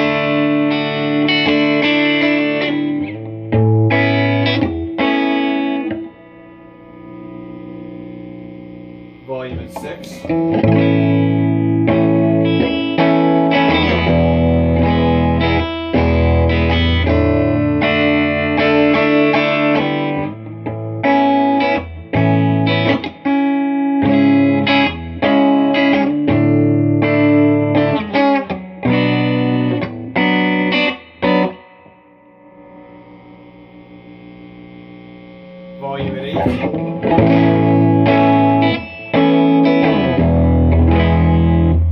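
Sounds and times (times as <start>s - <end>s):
electric guitar chords and riffs: 0.0s - 41.9s
amplifier low hum: 3.5s - 11.8s, 31.9s - 39.0s.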